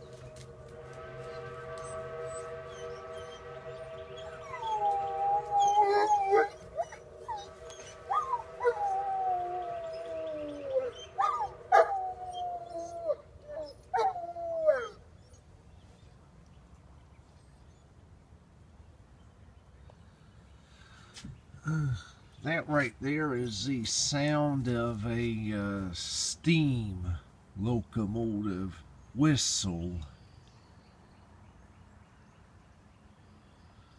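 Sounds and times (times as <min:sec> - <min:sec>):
distant steam locomotive whistle: 0:00.0 - 0:15.0, 0:22.5 - 0:27.2
dog howling: 0:01.3 - 0:15.4.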